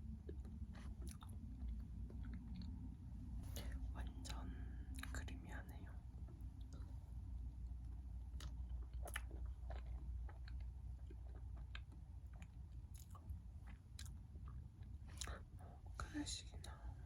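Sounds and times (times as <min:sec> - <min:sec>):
person chewing: 0:00.2 - 0:02.8, 0:08.3 - 0:15.5.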